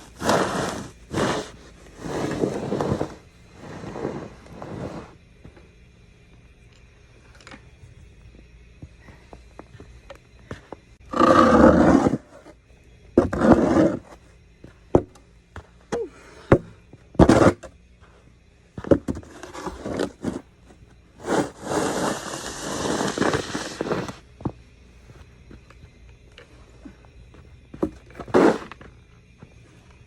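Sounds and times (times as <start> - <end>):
snow shovel scraping snow: 0.0 - 5.2, 11.1 - 12.5, 13.2 - 14.2, 17.2 - 17.6, 19.1 - 20.6, 21.2 - 24.2, 28.1 - 28.8.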